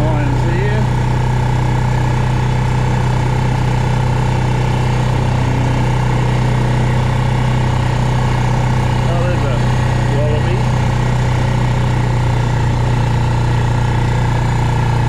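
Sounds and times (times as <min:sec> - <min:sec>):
vehicle engine running: 0:00.0 - 0:15.0.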